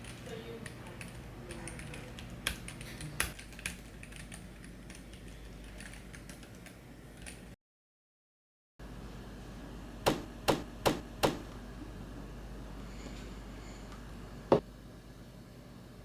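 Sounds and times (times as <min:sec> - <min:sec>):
sharp knocks: 0:10.1 - 0:11.6.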